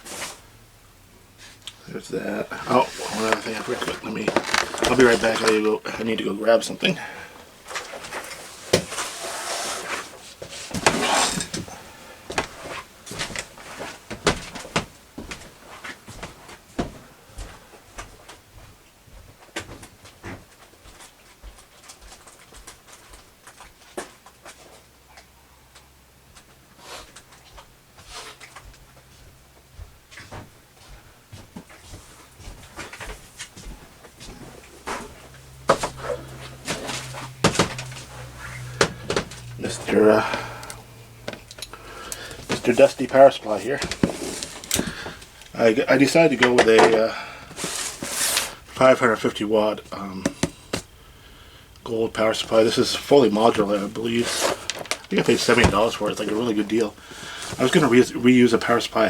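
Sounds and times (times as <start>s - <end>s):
scraping or rustling: 0.0s - 0.4s, 2.5s - 5.8s, 7.7s - 16.6s, 31.6s - 40.9s, 41.5s - 45.4s, 46.2s - 48.8s, 52.4s - 58.0s
low steady hum: 21.0s - 59.0s.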